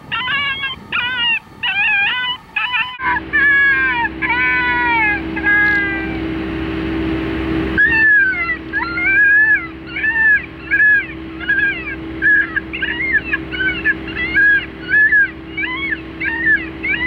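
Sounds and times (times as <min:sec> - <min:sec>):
steady low hum: 0:00.0 - 0:17.0
cat cries: 0:07.8 - 0:17.0.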